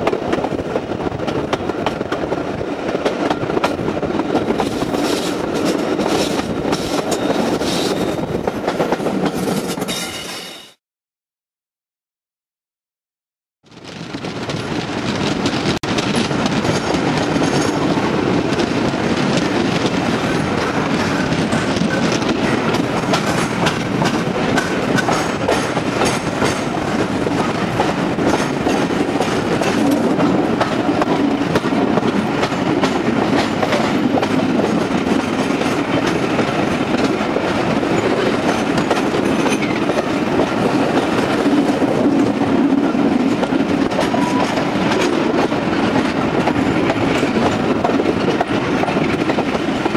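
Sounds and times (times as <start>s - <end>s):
train rumble: 0.0s - 10.3s, 13.7s - 49.9s
wheels clicking over rail joints: 14.0s - 49.9s.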